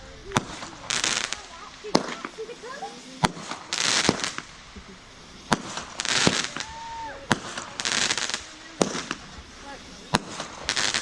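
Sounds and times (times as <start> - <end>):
firework bangs: 0.0 - 11.0
firework whistle: 0.0 - 11.0
hissing crackling firework bursts: 0.0 - 11.0.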